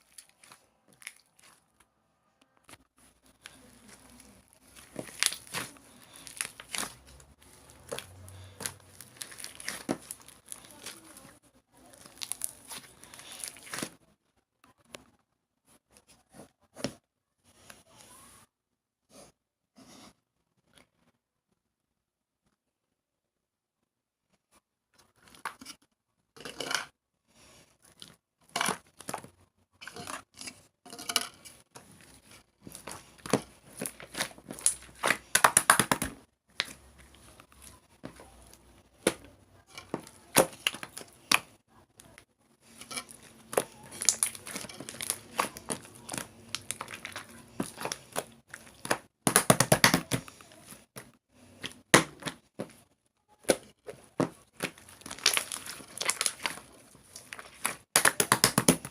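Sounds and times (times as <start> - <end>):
slime squished by hand crackling: 3.2 - 14.0, 31.9 - 42.2, 42.8 - 51.0, 53.4 - 58.9.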